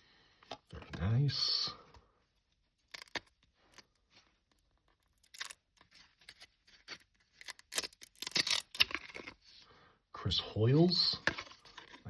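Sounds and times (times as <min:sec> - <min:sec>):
trading cards rustling and clicking: 0:02.8 - 0:09.5, 0:11.2 - 0:12.0.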